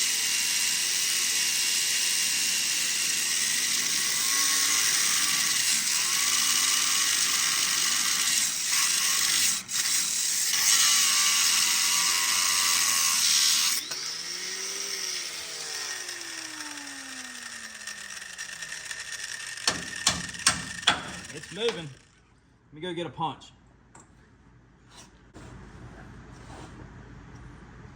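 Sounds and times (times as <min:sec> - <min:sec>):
grinder cutting metal: 0:00.0 - 0:22.2
sharp metal clicks: 0:17.9 - 0:22.1.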